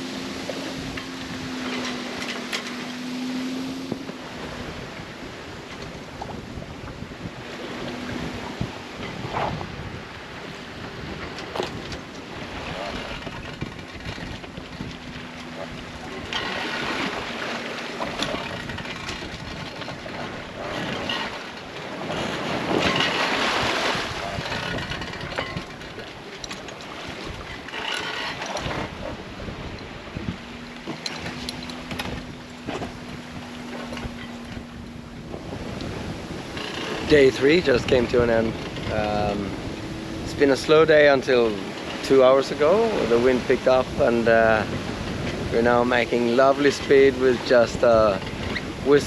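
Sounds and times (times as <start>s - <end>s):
low hum: 0.0s - 43.5s
water rushing along boat hull: 0.0s - 49.0s
wind on microphone: 0.0s - 49.0s
small clicks and knocks: 30.6s - 32.9s.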